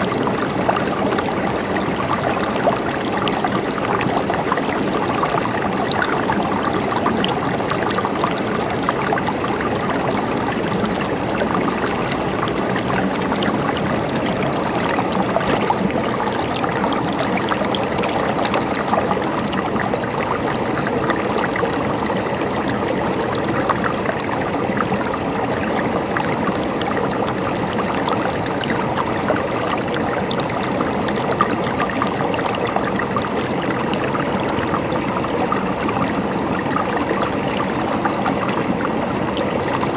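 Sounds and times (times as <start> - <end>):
stream water babbling: 0.0 - 39.9.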